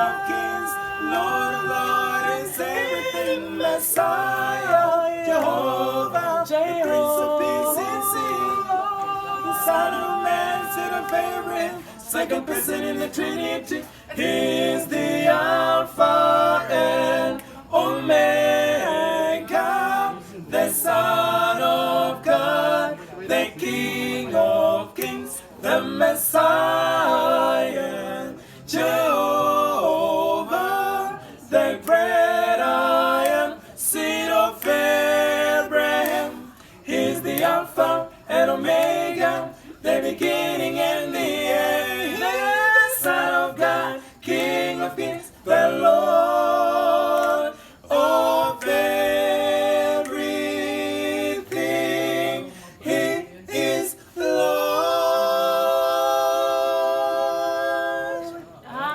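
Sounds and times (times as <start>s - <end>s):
a cappella gospel singing: 0.0s - 58.9s
singers breathing: 11.8s - 12.0s, 13.8s - 14.2s, 28.4s - 28.7s, 36.5s - 36.9s, 44.0s - 44.2s, 47.5s - 47.9s, 52.5s - 52.8s.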